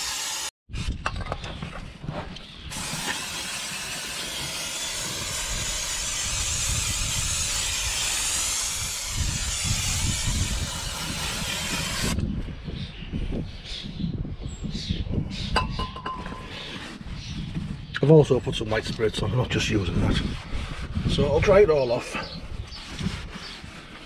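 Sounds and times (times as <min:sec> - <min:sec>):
aerosol spray hissing: 0:00.0 - 0:00.5, 0:02.7 - 0:12.2.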